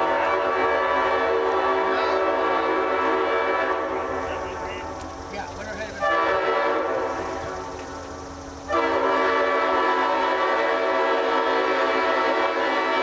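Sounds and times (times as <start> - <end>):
locomotive air horn chord: 0.0 - 5.0, 5.9 - 8.1, 8.7 - 13.0.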